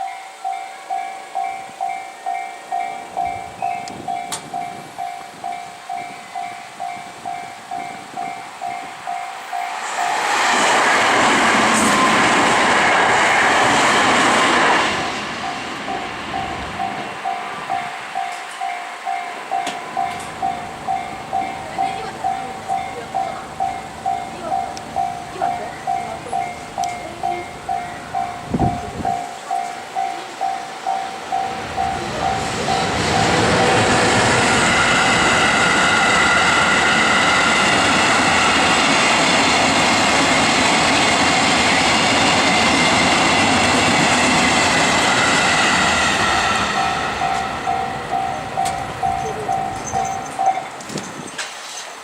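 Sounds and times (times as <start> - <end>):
level crossing bell dinging: 0.0 - 9.7, 15.5 - 33.3, 46.8 - 50.8
train wheels rushing on rail: 0.0 - 52.0.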